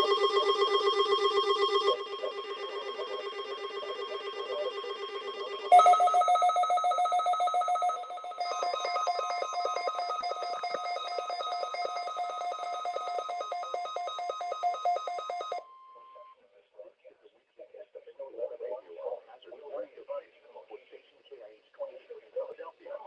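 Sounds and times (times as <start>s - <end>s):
buzzy electronic alert tones: 0.0s - 15.5s.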